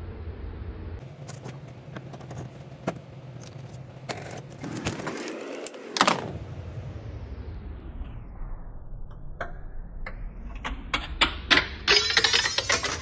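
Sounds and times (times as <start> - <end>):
metal parts clinking and scraping: 11.9 - 13.0.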